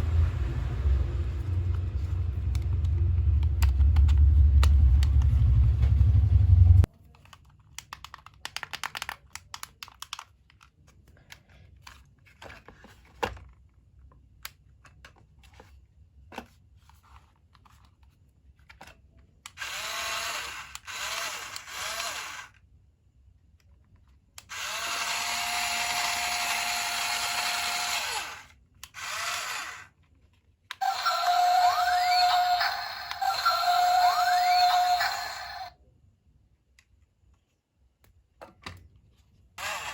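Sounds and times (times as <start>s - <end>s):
low rumble: 0.0s - 6.9s
toy gear motors whirring: 19.5s - 22.6s, 24.4s - 30.0s, 30.7s - 35.7s, 39.6s - 39.9s.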